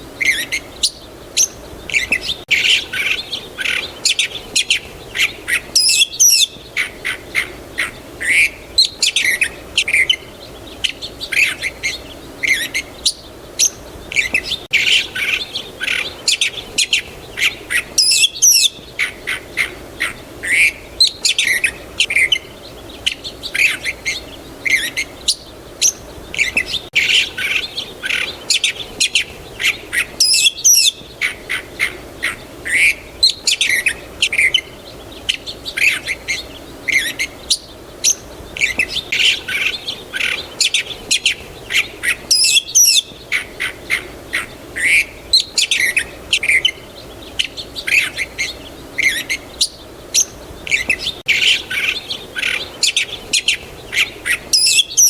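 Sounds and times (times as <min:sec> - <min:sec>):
birds chirping: 0:00.0 - 0:55.0.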